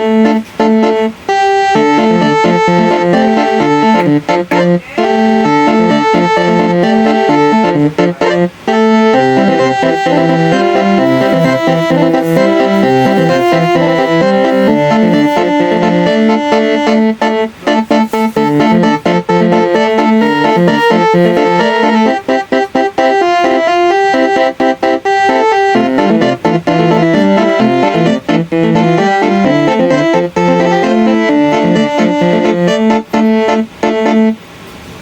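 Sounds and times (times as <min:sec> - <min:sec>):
multi-trumpet bus horn tune: 0:00.0 - 0:34.7.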